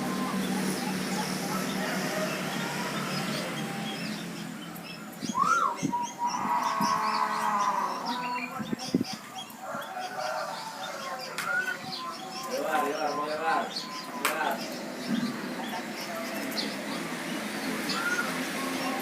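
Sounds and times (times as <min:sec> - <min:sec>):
high bird chirps: 0:00.0 - 0:19.0
rising and falling bird call: 0:00.0 - 0:19.0
doves cooing: 0:05.2 - 0:16.5, 0:17.7 - 0:19.0.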